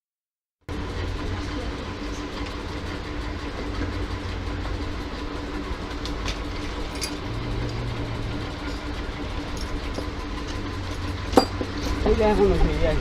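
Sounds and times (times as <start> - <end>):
constant hum: 0.7 - 13.0
low rumble: 6.6 - 11.3.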